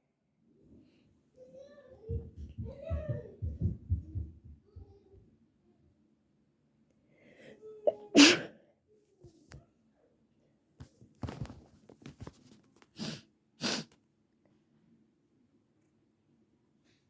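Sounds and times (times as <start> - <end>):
person sneezing: 7.9 - 8.6, 13.0 - 13.9
breaths and sniffs: 12.9 - 14.0.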